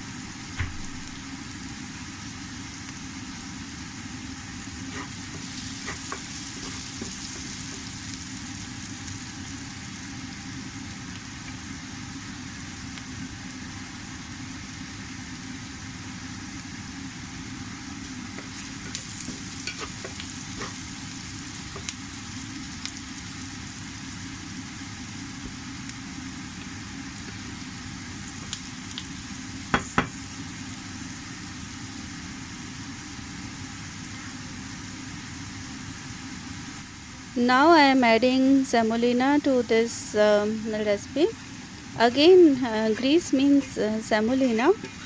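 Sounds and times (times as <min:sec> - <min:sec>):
food sizzling in oil: 0:00.0 - 0:45.0.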